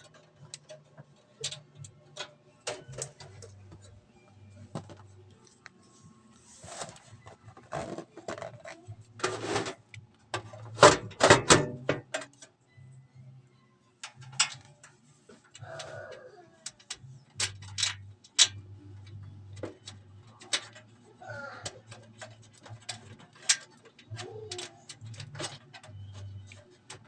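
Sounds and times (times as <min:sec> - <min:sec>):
handling rustles: 0:04.6 - 0:09.8
computer parts clicking and knocking: 0:09.2 - 0:12.5, 0:16.7 - 0:20.9, 0:21.6 - 0:27.0.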